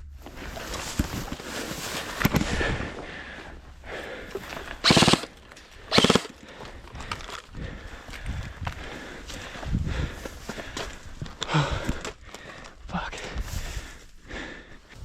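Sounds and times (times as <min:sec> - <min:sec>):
airsoft gun automatic bursts: 0:04.8 - 0:06.4.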